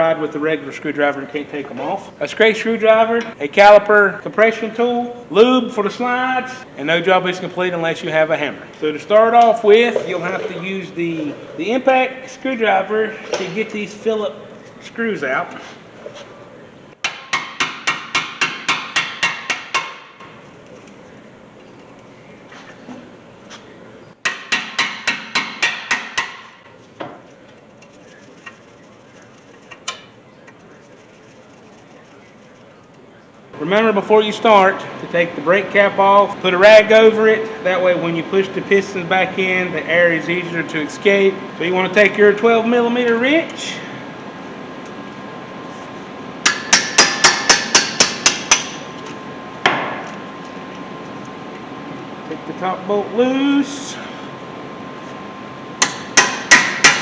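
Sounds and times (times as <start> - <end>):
hammer striking impact screwdriver: 17.1 - 20.0.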